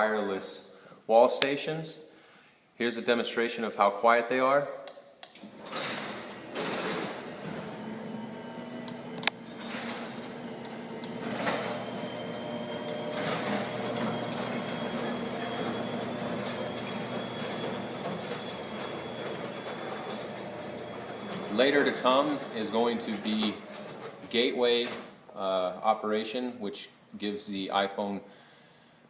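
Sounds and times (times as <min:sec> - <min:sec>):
garage door opener humming: 0:05.4 - 0:25.2
door panels rumbling on tracks: 0:05.5 - 0:25.1.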